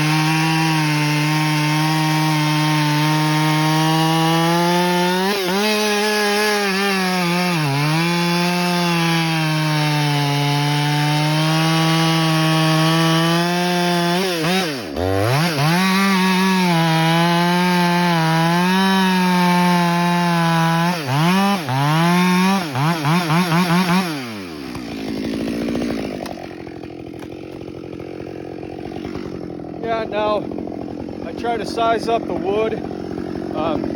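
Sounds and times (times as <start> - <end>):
chainsaw cutting wood: 0.0 - 33.9
chainsaw throttle blips: 0.0 - 33.9.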